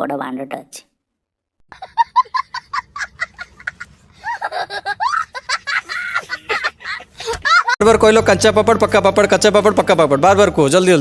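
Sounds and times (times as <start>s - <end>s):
person laughing: 1.7s - 7.9s.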